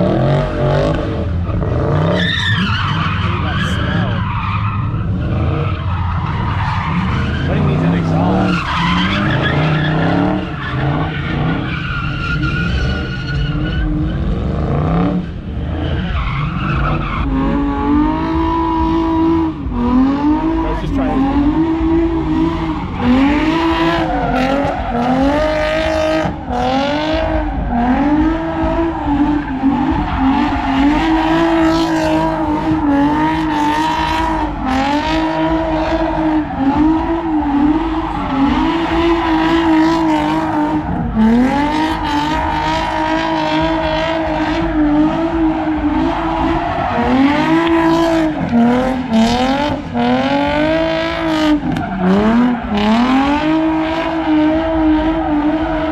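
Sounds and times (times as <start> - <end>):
car engine revving: 0.0 - 55.9.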